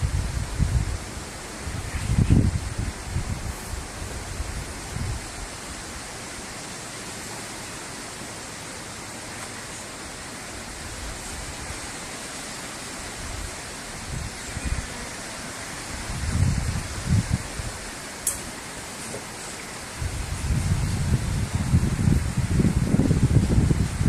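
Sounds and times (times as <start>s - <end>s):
wind rumbling on microphone: 0.0s - 6.3s, 12.9s - 18.0s, 19.6s - 24.0s
outdoor background hiss: 0.0s - 24.0s.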